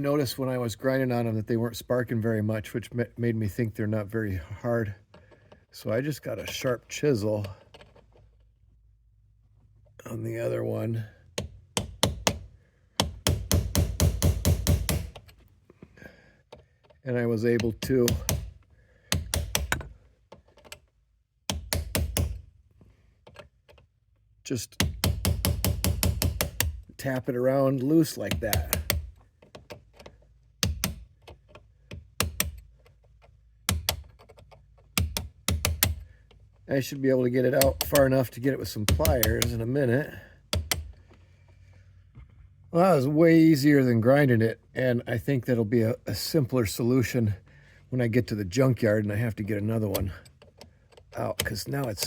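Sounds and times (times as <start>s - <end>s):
hammer striking chisel on metal: 11.4s - 15.2s, 17.6s - 18.5s, 19.1s - 19.9s, 21.5s - 22.4s, 24.8s - 26.8s, 28.3s - 29.1s, 35.0s - 36.0s, 37.6s - 38.2s, 38.9s - 39.6s
chisel tapping metal bolt: 11.4s - 15.4s, 16.5s - 20.8s, 21.5s - 22.4s, 24.8s - 26.8s, 28.3s - 36.4s, 37.5s - 39.7s, 40.5s - 41.0s, 49.9s - 52.0s.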